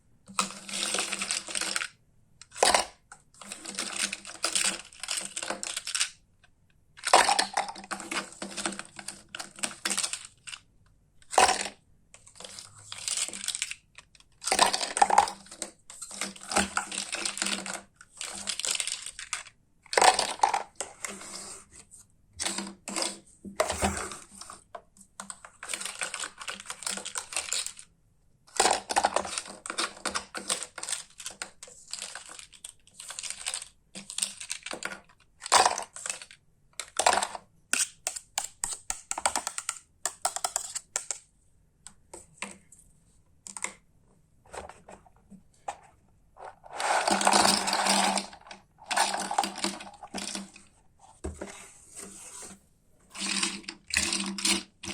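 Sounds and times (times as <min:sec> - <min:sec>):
plastic toy pieces clattering: 0:00.4 - 0:06.2, 0:07.0 - 0:10.7, 0:12.4 - 0:20.8, 0:25.3 - 0:27.9, 0:28.5 - 0:41.3, 0:45.7 - 0:50.7, 0:53.2 - 0:54.9.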